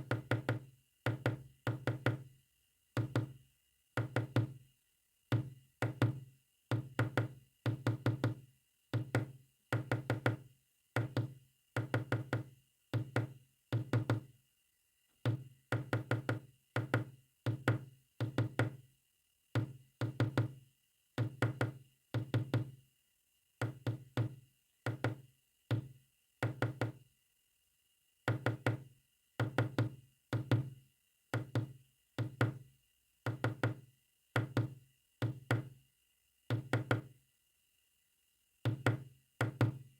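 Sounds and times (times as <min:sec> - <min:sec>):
morse code knocks on hard surface: 0:00.0 - 0:02.3, 0:11.0 - 0:14.3, 0:15.2 - 0:18.8, 0:33.3 - 0:33.8, 0:34.4 - 0:35.8, 0:36.5 - 0:37.1, 0:38.6 - 0:39.9.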